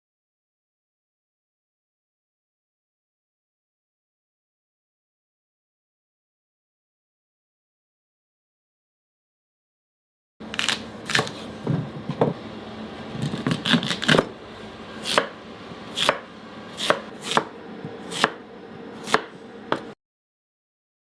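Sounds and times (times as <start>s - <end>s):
knife cutting sweet potato: 10.5s - 11.5s, 13.2s - 14.3s, 15.0s - 18.4s, 19.0s - 19.9s.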